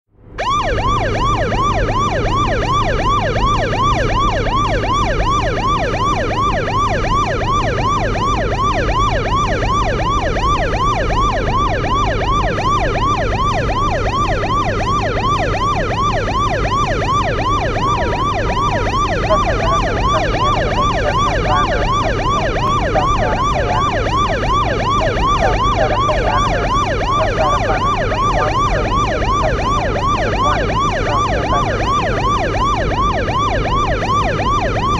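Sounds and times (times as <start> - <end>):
engine and road rumble: 0.1 - 34.9
police siren yelping: 0.4 - 34.9
second wavering siren tone: 16.4 - 34.7.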